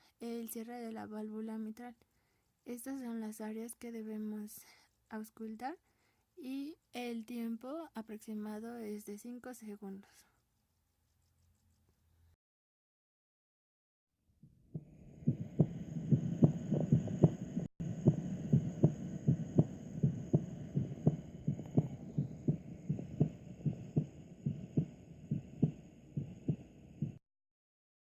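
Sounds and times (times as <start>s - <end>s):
heartbeat through a stethoscope: 14.4s - 27.2s.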